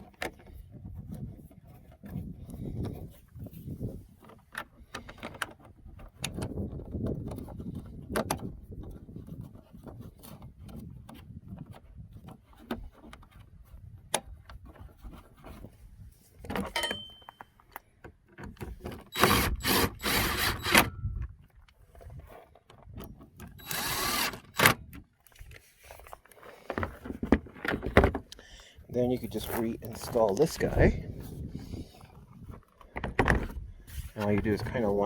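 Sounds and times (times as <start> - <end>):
clicks and rubbing of handled parts: 0.0 - 35.0
cordless drill driving a screw: 19.1 - 20.9, 23.5 - 24.9.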